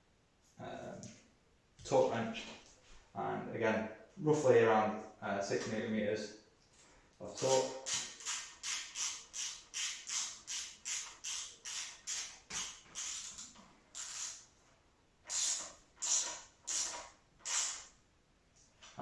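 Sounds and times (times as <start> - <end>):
torque wrench ratchet clicking: 7.4 - 14.4, 15.3 - 17.9.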